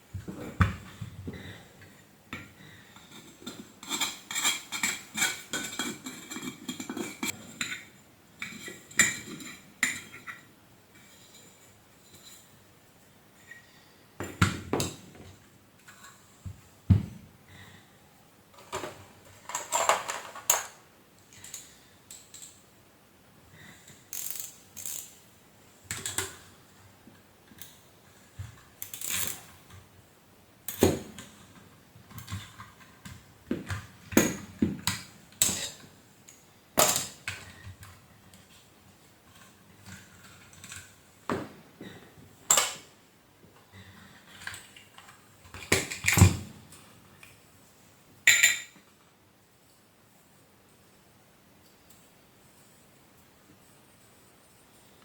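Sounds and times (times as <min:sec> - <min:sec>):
tools and metal parts clicking: 0:24.1 - 0:25.2, 0:28.8 - 0:29.5.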